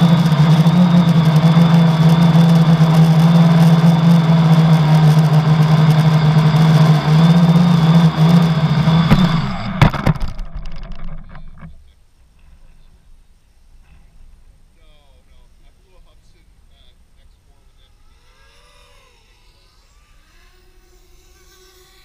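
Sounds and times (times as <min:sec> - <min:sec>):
drone motors buzzing: 0:00.0 - 0:13.1, 0:13.7 - 0:22.0
high motor whine: 0:00.0 - 0:22.0.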